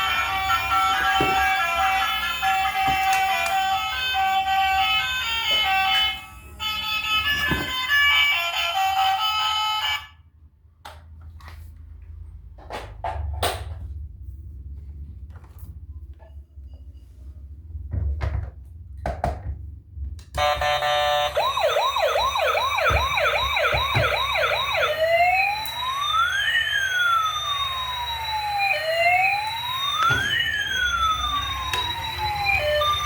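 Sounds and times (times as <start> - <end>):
toy electronic siren: 0.0 - 10.2, 20.4 - 33.0.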